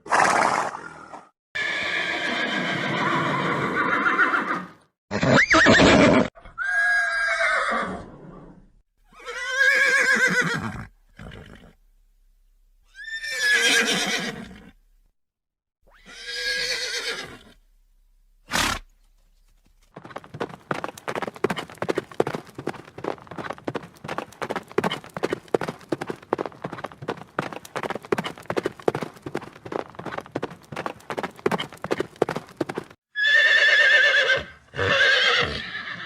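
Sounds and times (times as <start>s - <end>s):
horses whinnying: 1.6s - 8.4s, 9.1s - 11.7s, 12.9s - 14.7s, 15.9s - 17.6s, 20.0s - 36.0s
hooves clip-clopping: 19.4s - 33.0s.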